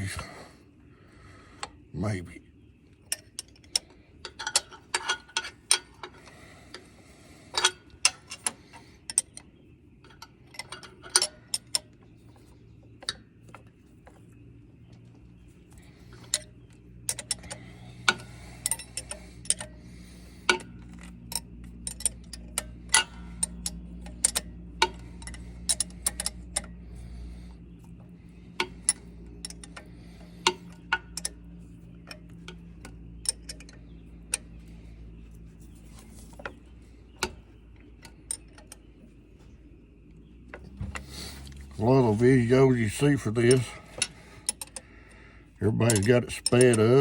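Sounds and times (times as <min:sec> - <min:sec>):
low steady hum: 0:00.0 - 0:47.0
hand tools clinking on metal: 0:15.8 - 0:36.6, 0:41.0 - 0:47.0.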